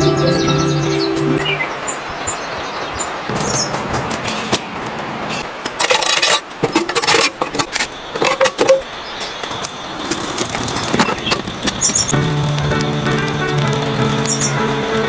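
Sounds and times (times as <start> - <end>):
objects clinking and scraping: 5.7 - 8.8.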